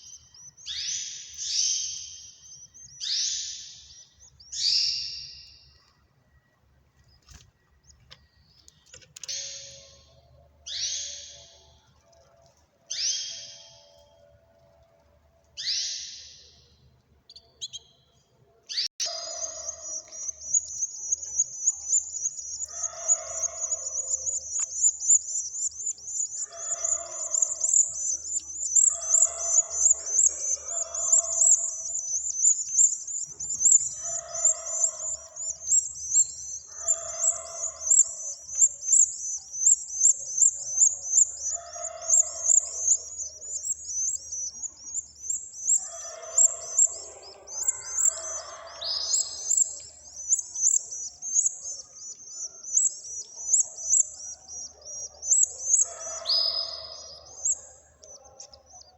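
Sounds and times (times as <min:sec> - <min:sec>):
nestlings twittering: 0:00.0 - 0:06.0, 0:06.6 - 0:14.8, 0:15.5 - 0:16.7, 0:18.7 - 0:58.9
short lower bird calls: 0:18.7 - 0:58.9.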